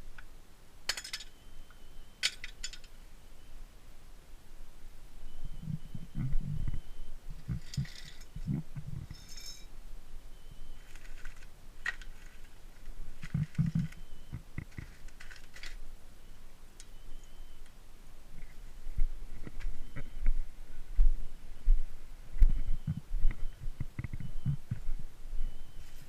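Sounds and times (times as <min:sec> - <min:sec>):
metal tools clinking and knocking: 0:00.9 - 0:01.4, 0:02.2 - 0:02.9, 0:07.6 - 0:08.4, 0:09.0 - 0:09.7
ringing metallic clink: 0:00.9 - 0:01.4, 0:09.1 - 0:09.7.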